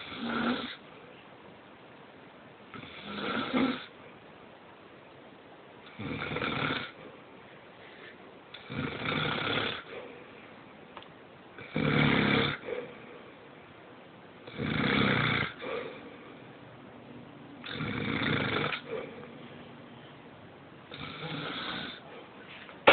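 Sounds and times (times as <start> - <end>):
man snoring: 0.0 - 0.8, 2.7 - 3.9, 5.9 - 7.0, 8.6 - 9.9, 11.6 - 12.7, 14.5 - 15.8, 17.6 - 19.1, 20.9 - 22.0.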